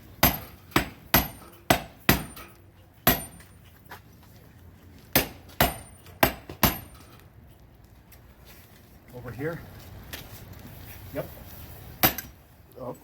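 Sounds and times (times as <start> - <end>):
hammer striking steel chisel: 0.2 - 3.5, 5.2 - 6.9.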